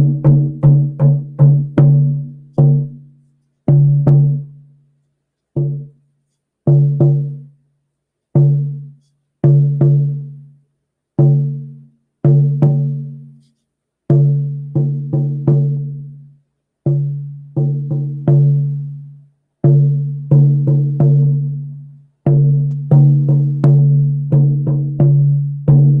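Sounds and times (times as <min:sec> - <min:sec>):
hand drum beats: 0:00.0 - 0:03.0, 0:03.7 - 0:04.6, 0:05.6 - 0:06.0, 0:19.7 - 0:21.7, 0:22.3 - 0:26.0.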